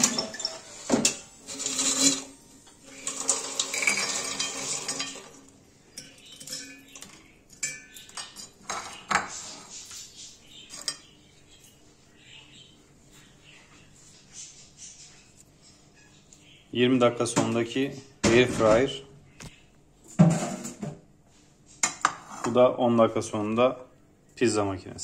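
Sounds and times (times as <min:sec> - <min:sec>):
scraping and rattling: 0:00.0 - 0:05.5
dishes and utensils clattering: 0:00.0 - 0:10.1, 0:10.7 - 0:11.8, 0:20.1 - 0:21.0.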